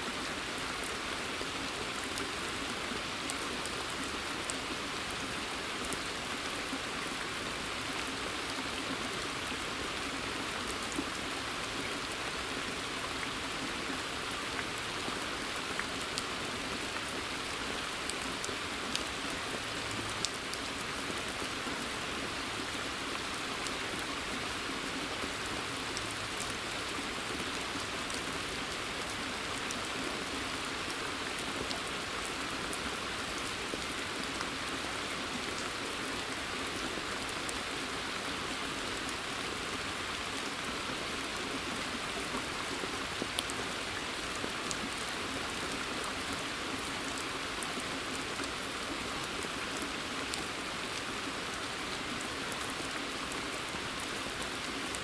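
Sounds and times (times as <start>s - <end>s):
rain hissing in woodland: 0.0s - 55.0s.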